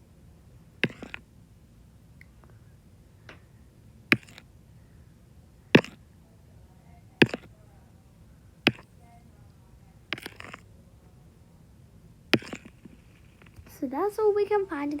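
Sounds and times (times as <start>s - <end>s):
fingertip taps on phone screen: 8.7s - 8.9s.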